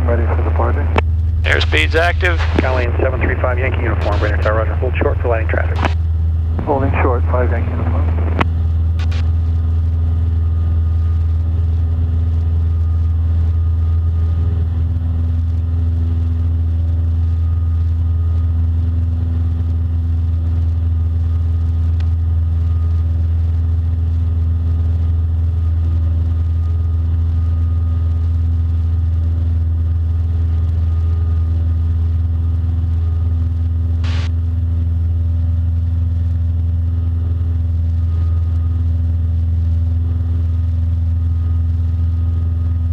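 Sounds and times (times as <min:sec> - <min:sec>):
propeller engine drone: 0:00.0 - 0:42.9.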